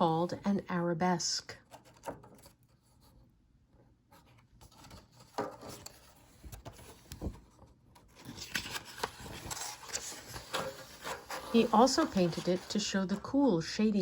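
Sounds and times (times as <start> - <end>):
paper pages rustling and turning: 4.2 - 13.3.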